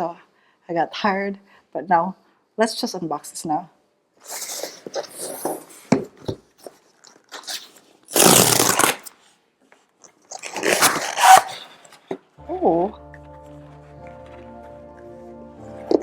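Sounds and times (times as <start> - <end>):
paper tearing rip: 7.3 - 9.2, 10.3 - 11.8
packaging crinkling and scraping: 10.0 - 12.1.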